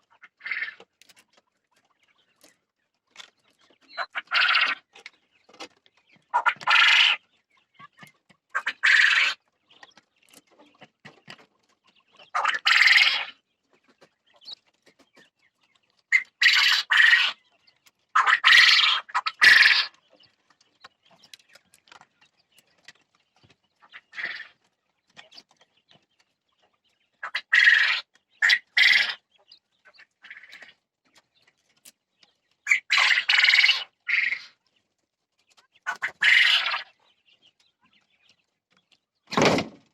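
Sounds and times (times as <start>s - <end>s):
quail calling: 0.0s - 0.9s, 3.7s - 5.0s, 6.1s - 11.4s, 12.0s - 13.4s, 16.1s - 20.3s, 23.8s - 24.6s, 27.2s - 30.8s, 32.6s - 34.6s, 35.8s - 38.0s.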